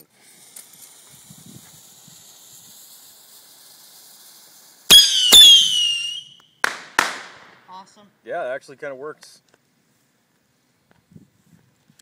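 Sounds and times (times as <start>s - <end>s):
firework fuse hissing: 0.0s - 7.6s
firework bangs: 1.8s - 7.7s
shrill falling whistle: 4.9s - 6.5s.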